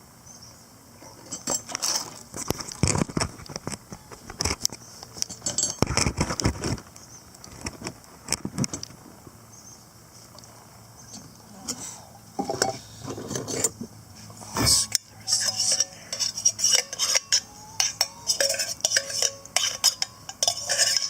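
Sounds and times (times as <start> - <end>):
metal cookware clinking: 15.3 - 21.0.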